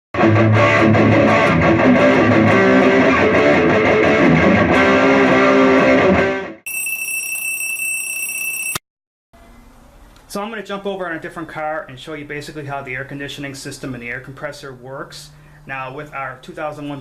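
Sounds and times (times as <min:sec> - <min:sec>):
electric guitar music: 0:00.2 - 0:06.6.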